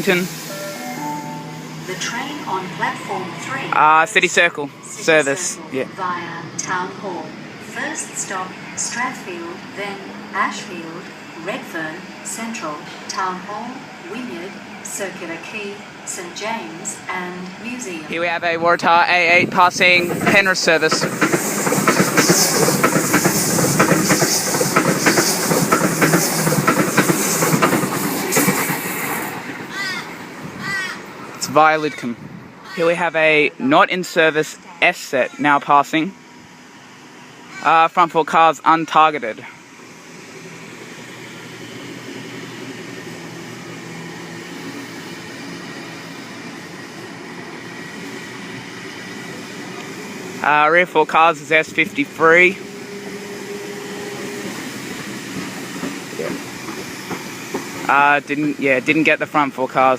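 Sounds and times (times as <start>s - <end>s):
train running hiss: 0.0s - 31.4s, 34.5s - 59.9s
train wheels clicking over rail joints: 19.7s - 29.4s, 54.2s - 57.9s.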